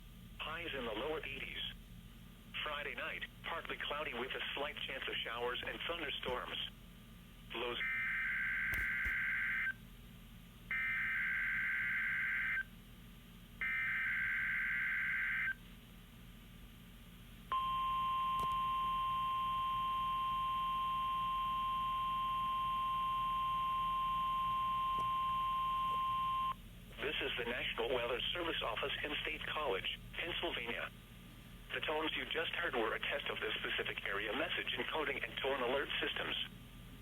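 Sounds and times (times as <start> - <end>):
steady single-pitch alert tone: 17.5 - 26.6.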